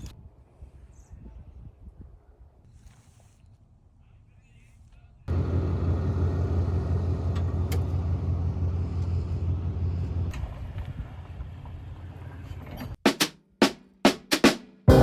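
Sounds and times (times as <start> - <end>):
motor vehicle running: 5.3 - 12.8
music drum hits: 13.1 - 15.0.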